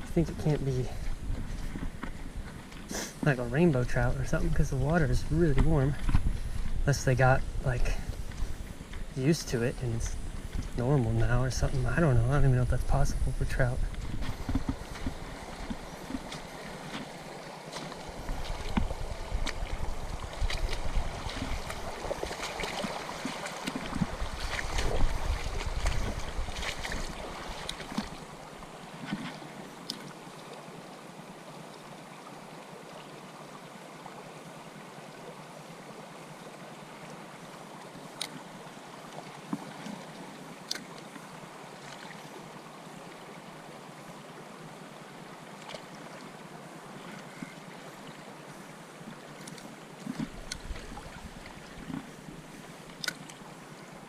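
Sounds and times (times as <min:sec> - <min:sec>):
wind buffeting microphone: 0:03.9 - 0:16.6, 0:18.1 - 0:27.7
river water rushing: 0:13.4 - 0:54.0.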